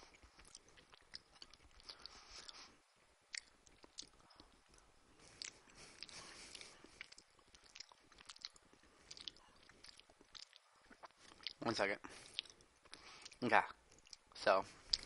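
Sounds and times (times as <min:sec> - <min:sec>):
chewing food: 0:00.0 - 0:15.0.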